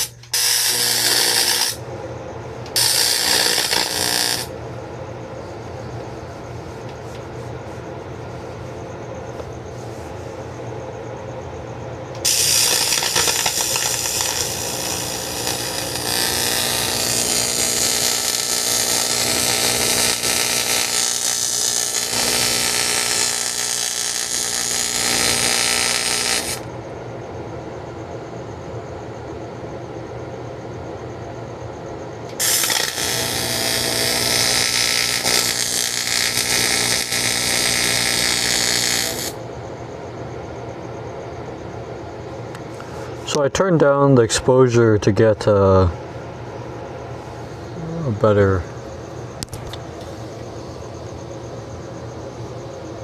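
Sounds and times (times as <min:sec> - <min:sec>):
welding arc crackling and hissing: 0:00.0 - 0:01.8, 0:02.7 - 0:04.6, 0:12.2 - 0:26.7, 0:32.3 - 0:39.4
welder hum: 0:00.0 - 0:04.7, 0:12.1 - 0:26.7, 0:32.3 - 0:39.4.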